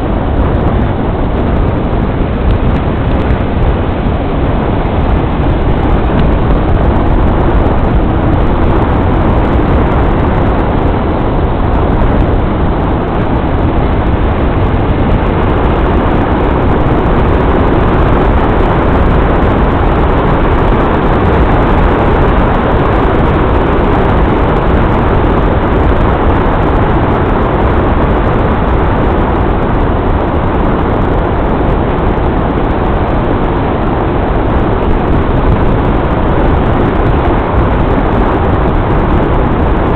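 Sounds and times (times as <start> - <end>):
car driving along road: 0.0 - 39.9.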